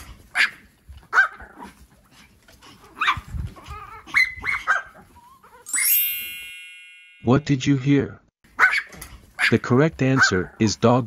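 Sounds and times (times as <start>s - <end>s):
dog barking: 0.3s - 1.7s, 4.0s - 5.0s, 8.6s - 10.6s.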